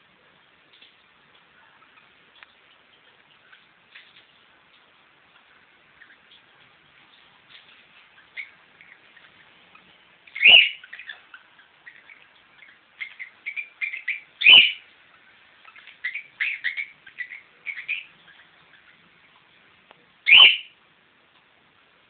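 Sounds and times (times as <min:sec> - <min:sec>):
cockatiel chirping and warbling: 0:09.2 - 0:14.9, 0:15.7 - 0:19.1, 0:20.2 - 0:20.8
cockatiel calls dropping in pitch: 0:10.4 - 0:10.8, 0:20.3 - 0:20.7.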